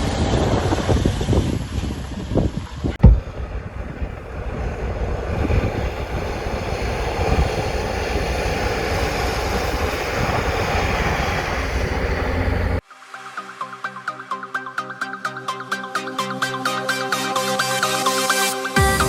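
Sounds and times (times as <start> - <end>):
engine deep rumble: 0.0 - 12.8.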